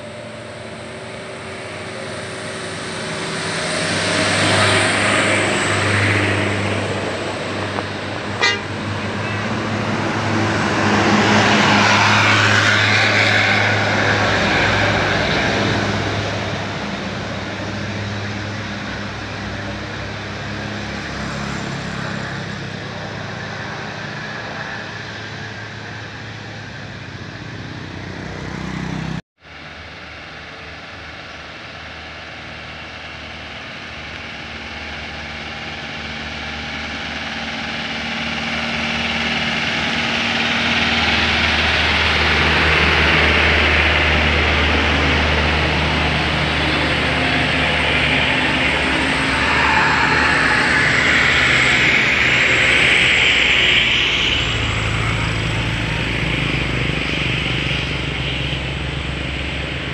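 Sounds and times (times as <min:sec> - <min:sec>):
bus engine running: 0:00.0 - 0:59.9
rising hiss: 0:44.8 - 0:55.4.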